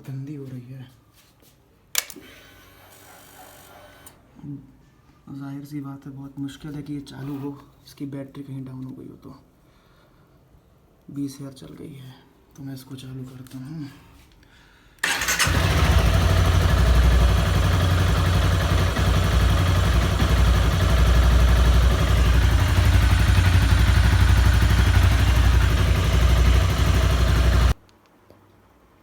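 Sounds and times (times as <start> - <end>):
motorcycle engine starting and running: 15.0 - 27.8.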